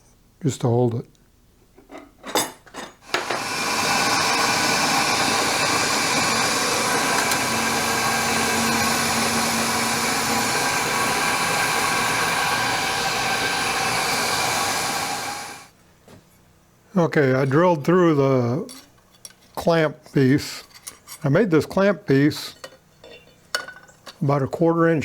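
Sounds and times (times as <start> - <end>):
electric drill drilling metal: 3.0 - 15.7
clicks of drill set up: 3.1 - 3.5.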